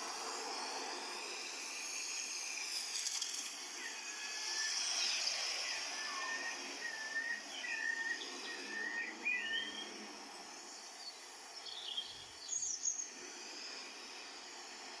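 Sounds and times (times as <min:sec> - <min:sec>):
steady high hiss: 0:00.0 - 0:15.0
birds chirping and whistling: 0:03.8 - 0:10.0.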